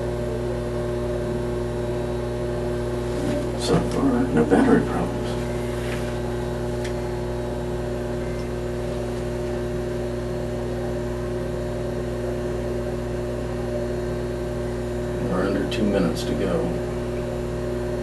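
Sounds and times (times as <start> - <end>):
steady electrical hum: 0.0 - 18.0
fan-like hiss: 2.9 - 7.2.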